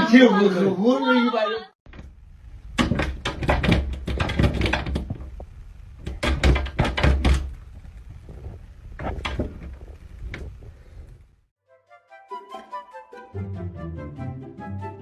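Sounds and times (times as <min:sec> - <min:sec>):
knocks and thuds: 0:02.8 - 0:07.6.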